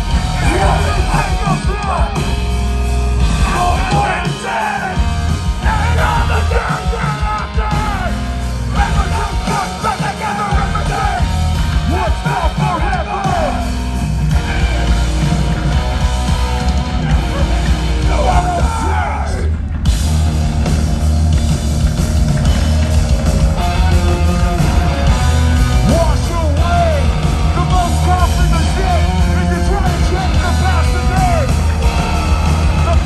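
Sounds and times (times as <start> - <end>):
hardcore band playing live: 0.0 - 33.0
person yelling vocals: 5.6 - 11.3.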